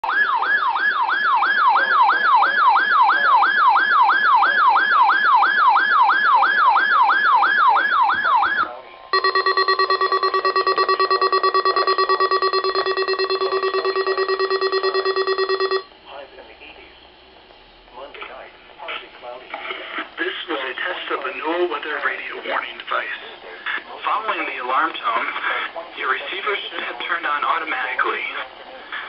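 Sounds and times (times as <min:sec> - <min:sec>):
fast pulsing alarm: 0:09.2 - 0:15.9
steady alert tone: 0:09.2 - 0:15.9
warbling siren alarm: 0:09.2 - 0:15.9.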